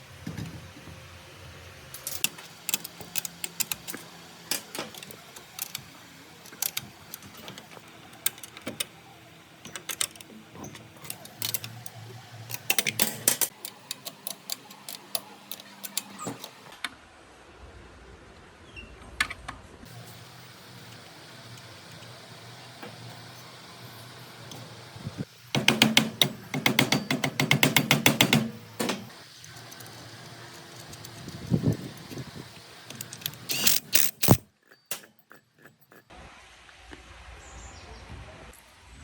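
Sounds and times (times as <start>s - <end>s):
metal tools clinking: 32.9s - 36.1s.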